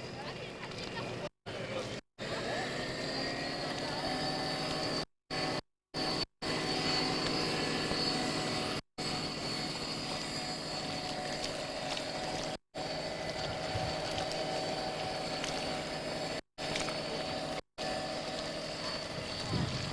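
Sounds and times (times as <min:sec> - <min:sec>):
model boat motor whine: 0:00.0 - 0:19.9.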